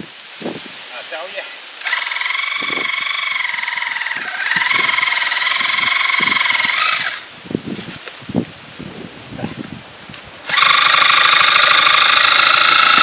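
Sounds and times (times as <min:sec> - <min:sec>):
reciprocating saw running: 0:01.8 - 0:07.3, 0:10.4 - 0:13.0.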